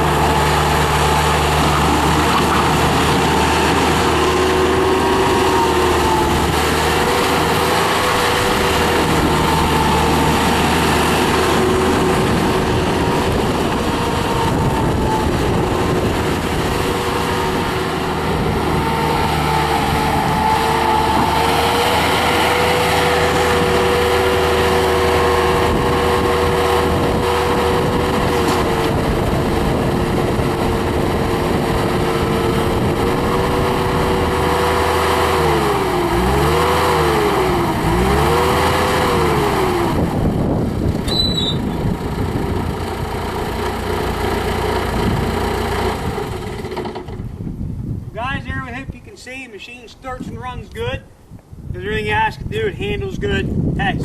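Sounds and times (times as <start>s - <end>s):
diesel engine running at high revs: 0.0s - 48.4s.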